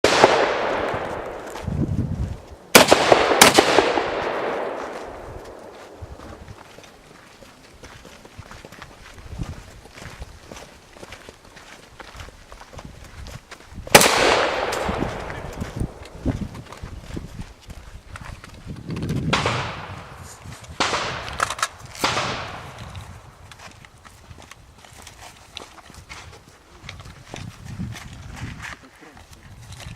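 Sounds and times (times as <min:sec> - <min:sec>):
shotgun shots echoing: 0:00.0 - 0:01.6, 0:02.7 - 0:06.0, 0:13.9 - 0:16.2, 0:19.3 - 0:20.2, 0:20.8 - 0:22.9.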